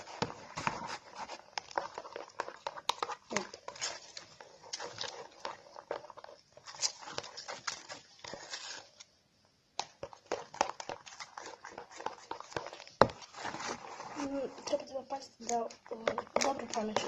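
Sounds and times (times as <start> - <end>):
slime being stirred: 0.0 - 9.2, 9.8 - 17.0.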